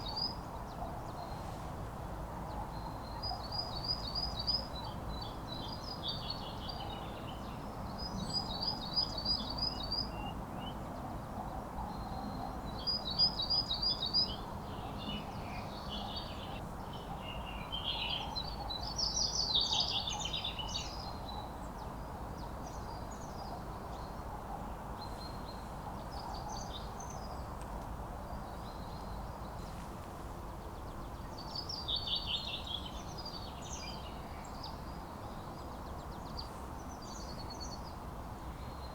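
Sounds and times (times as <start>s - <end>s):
songbirds singing: 11.9s - 27.6s.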